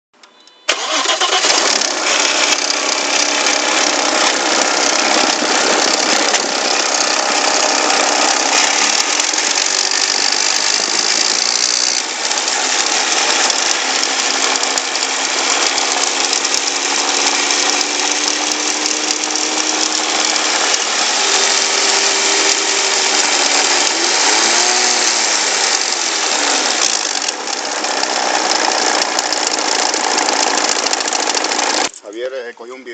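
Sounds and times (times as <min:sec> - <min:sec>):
odd engine noise: 0:00.3 - 0:32.0
car engine revving: 0:00.7 - 0:31.9.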